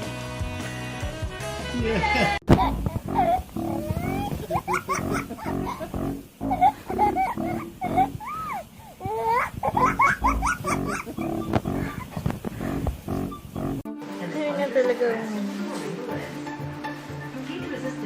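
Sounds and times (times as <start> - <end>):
dog whining and yowling: 6.6 - 12.2.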